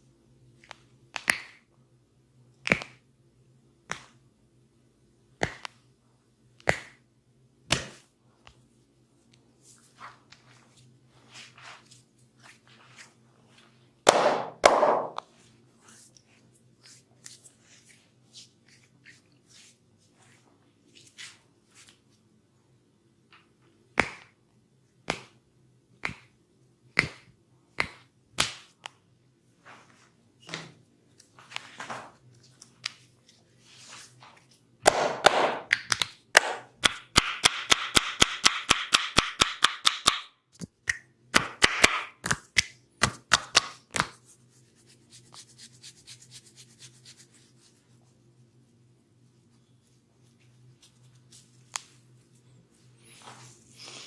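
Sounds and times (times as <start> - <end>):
hands slapping skin: 2.6 - 3.0, 3.8 - 4.2, 5.4 - 5.8, 6.6 - 7.0, 7.7 - 8.6, 14.1 - 15.3, 24.0 - 24.4, 25.0 - 25.4, 26.0 - 26.4, 27.0 - 29.0, 34.9 - 44.2
hands rubbing skin: 9.3 - 22.1, 32.4 - 34.6, 42.2 - 54.0.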